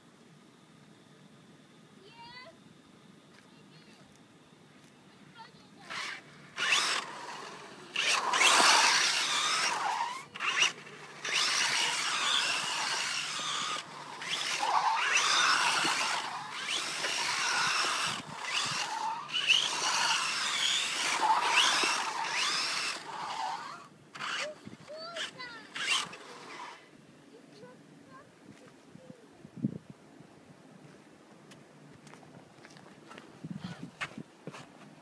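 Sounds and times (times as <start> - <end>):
tyres scrubbing on tarmac: 5.8 - 26.8
electric motor whining: 5.9 - 26.8.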